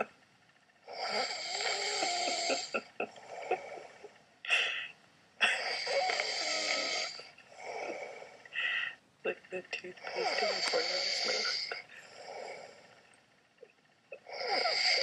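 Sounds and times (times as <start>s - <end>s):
man snoring heavily: 0.8s - 4.1s, 5.4s - 8.9s, 10.0s - 13.0s, 14.2s - 15.0s.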